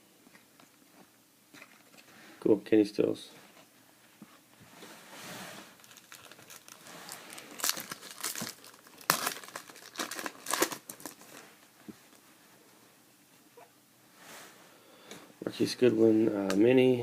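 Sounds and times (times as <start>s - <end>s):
foil wrapper tearing and crinkling: 5.8s - 11.4s.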